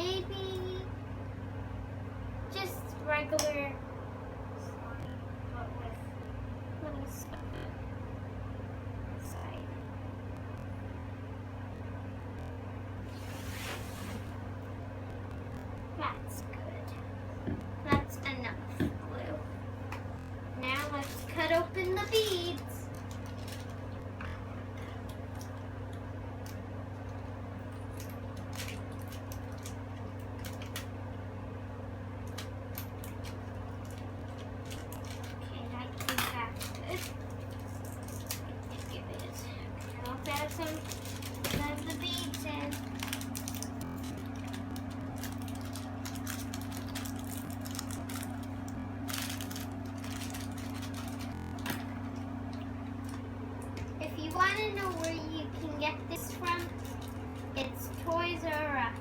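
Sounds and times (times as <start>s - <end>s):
steady low hum: 0.0s - 59.0s
plastic beads clicking and rustling: 22.1s - 23.8s, 32.3s - 35.4s, 36.5s - 52.0s.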